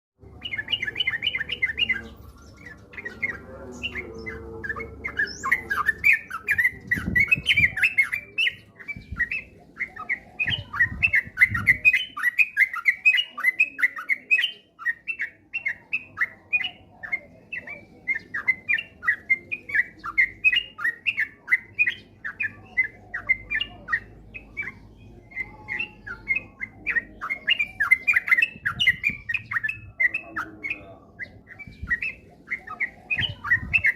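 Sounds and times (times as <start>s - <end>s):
bird singing rapid chirps: 0.2s - 33.9s.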